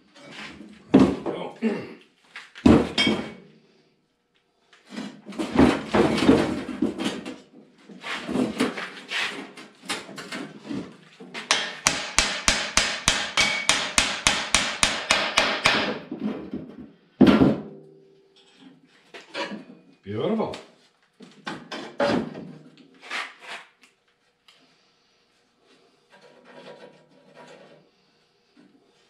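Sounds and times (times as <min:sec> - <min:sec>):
hammering on metal parts: 0:11.4 - 0:16.1.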